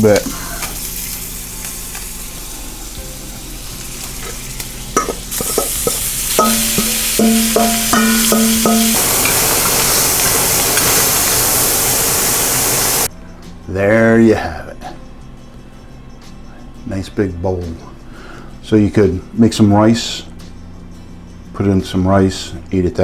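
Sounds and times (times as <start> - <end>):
food sizzling in a pan: 0.0 - 13.1.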